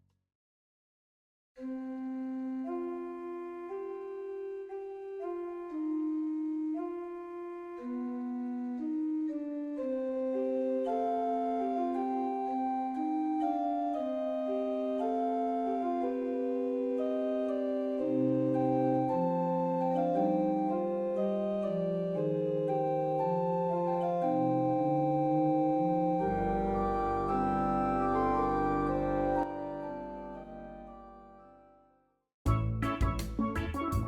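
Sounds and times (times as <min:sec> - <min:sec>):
calm organ music: 0:01.6 - 0:31.8, 0:32.5 - 0:34.0
deep bass line: 0:32.5 - 0:34.0.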